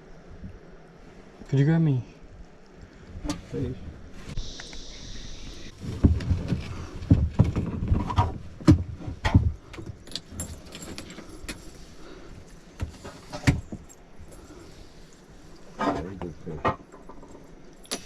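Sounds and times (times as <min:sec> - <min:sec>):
fishing gear clattering: 0:09.8 - 0:11.8.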